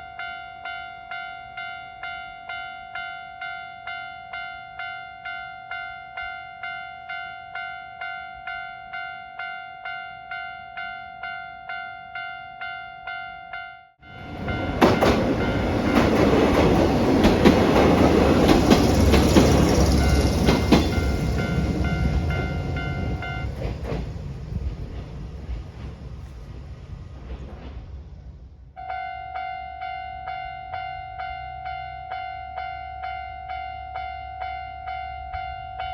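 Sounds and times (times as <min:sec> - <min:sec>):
level crossing warning bell: 0:00.0 - 0:23.8, 0:28.8 - 0:35.9
electric train passing: 0:14.0 - 0:35.9
train wheels clicking over rail joints: 0:14.3 - 0:28.3.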